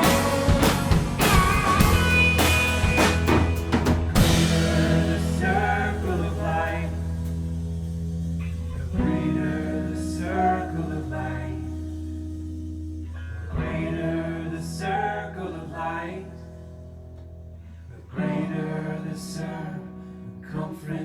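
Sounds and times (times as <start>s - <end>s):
people singing: 0.0s - 7.4s, 8.9s - 12.0s, 13.5s - 16.4s, 18.1s - 21.0s
strummed guitar chords: 0.0s - 14.1s
held bass notes: 0.0s - 19.2s.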